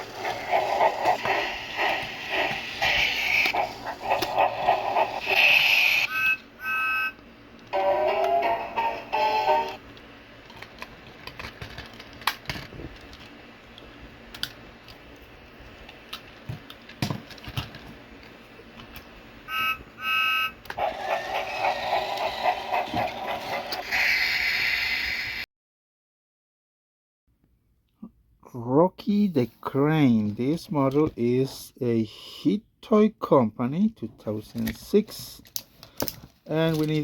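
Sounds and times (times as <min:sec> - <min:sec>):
small clicks and handling noise: 0:09.9 - 0:19.1, 0:34.5 - 0:37.0.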